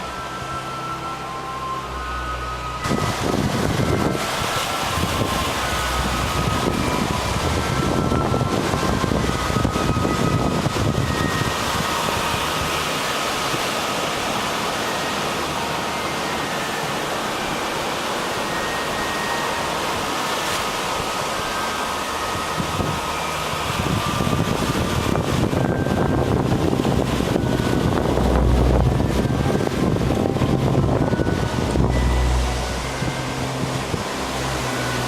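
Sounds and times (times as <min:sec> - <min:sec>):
wind and sea rushing: 0:00.0 - 0:35.0
wind buffeting microphone: 0:02.2 - 0:15.1, 0:22.3 - 0:35.0.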